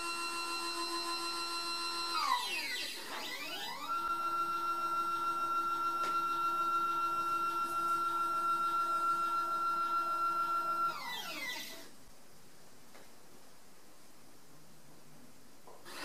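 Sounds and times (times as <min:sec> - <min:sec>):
stepper motors whining: 0:00.0 - 0:11.9.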